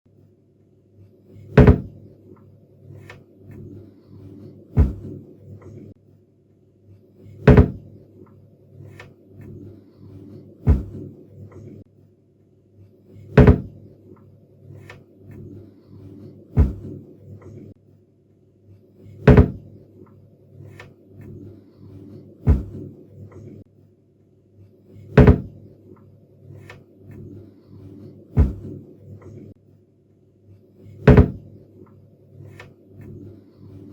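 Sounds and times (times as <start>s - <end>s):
cabinet door shutting: 1.6s - 1.9s, 7.5s - 7.8s, 13.4s - 13.7s, 19.3s - 19.6s, 22.5s - 22.8s, 25.2s - 25.5s, 31.0s - 31.4s.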